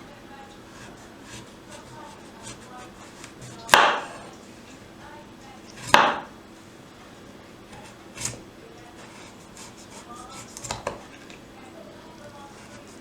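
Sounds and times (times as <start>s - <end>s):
kitchen scrape: 0.3s - 4.8s, 7.7s - 11.4s, 12.2s - 13.0s.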